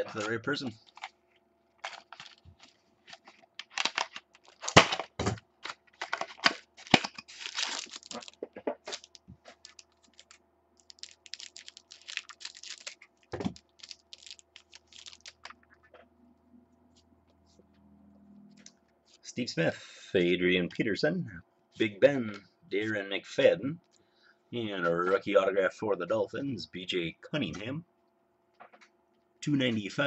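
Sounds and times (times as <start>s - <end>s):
foil pack crinkling and tearing: 0.1s - 1.2s, 1.8s - 15.7s.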